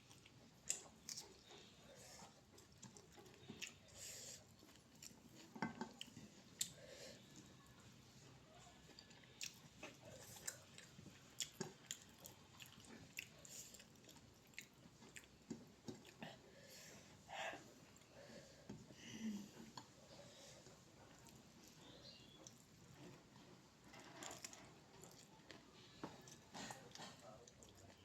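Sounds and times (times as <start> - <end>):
wet chewing smacks and clicks: 0.0 - 1.7, 2.5 - 3.9, 4.5 - 7.5, 9.0 - 16.4.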